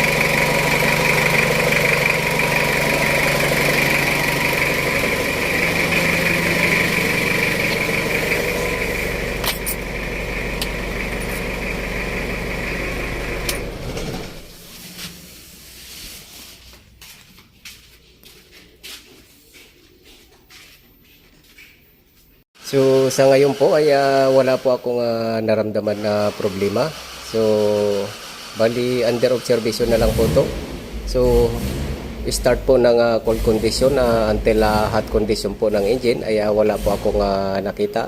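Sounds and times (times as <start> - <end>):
car engine idling: 0.0 - 14.8, 26.6 - 38.0.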